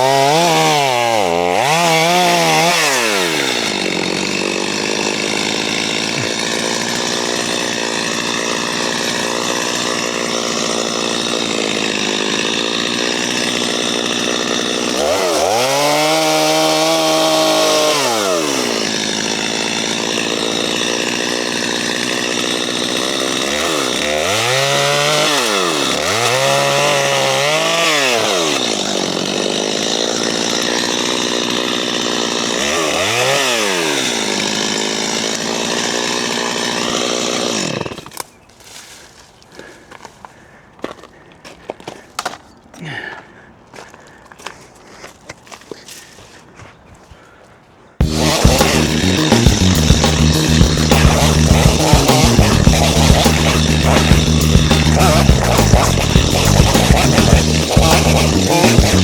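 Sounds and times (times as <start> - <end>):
engine running under load: 48.0 - 59.0.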